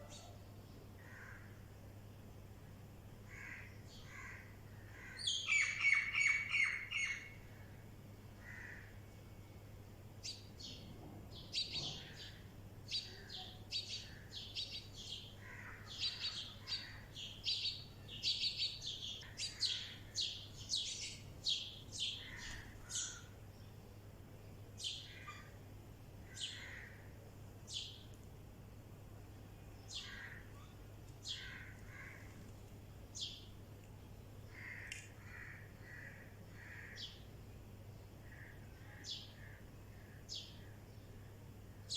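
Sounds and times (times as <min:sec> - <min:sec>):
birds chirping: 0:03.3 - 0:07.5, 0:10.2 - 0:23.8, 0:26.3 - 0:27.1, 0:29.7 - 0:32.5
soft low bird calls: 0:29.8 - 0:32.5.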